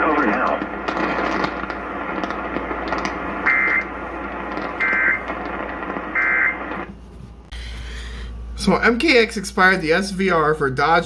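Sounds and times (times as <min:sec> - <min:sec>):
radio hiss: 0:00.0 - 0:07.0
harsh digital tone bursts: 0:02.1 - 0:06.9.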